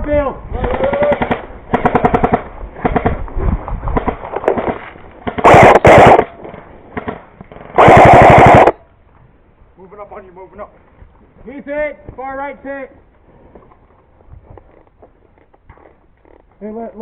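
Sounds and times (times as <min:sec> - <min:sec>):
airsoft guns firing bursts: 0:00.6 - 0:03.2, 0:04.0 - 0:07.2, 0:07.8 - 0:08.8.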